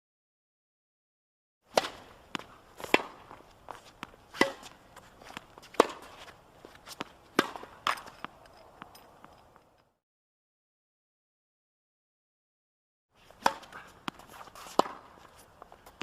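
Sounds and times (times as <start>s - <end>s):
footsteps on a court: 2.2s - 9.7s, 13.2s - 16.0s.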